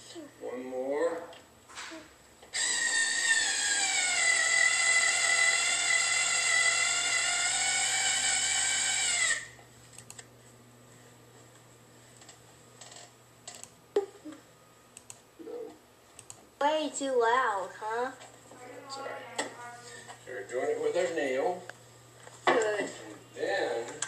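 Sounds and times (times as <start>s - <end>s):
cordless drill motor whining: 2.5s - 9.6s.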